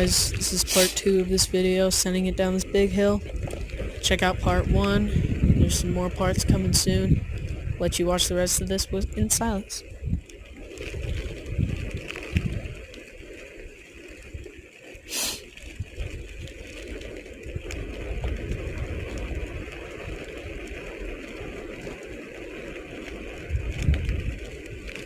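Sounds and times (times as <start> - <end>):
skateboard wheels rolling on pavement: 0.0 - 25.0
sharp scraping hiss: 0.6 - 1.1, 15.1 - 15.5.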